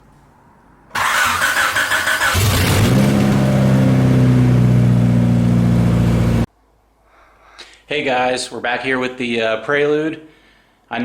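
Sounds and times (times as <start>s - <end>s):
car engine starting and idling: 0.7s - 6.5s.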